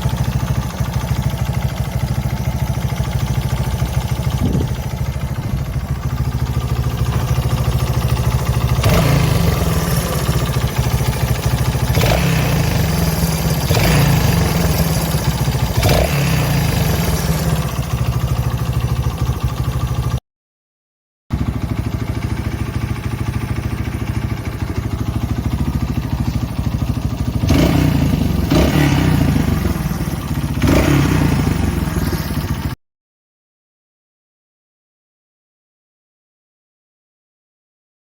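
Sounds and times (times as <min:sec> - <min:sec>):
motorcycle engine idling: 0:00.0 - 0:20.2, 0:21.3 - 0:32.8.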